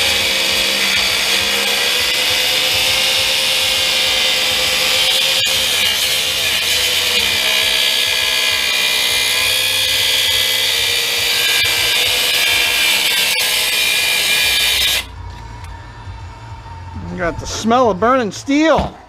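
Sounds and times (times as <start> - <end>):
power tool grinding steel: 0.0 - 15.1.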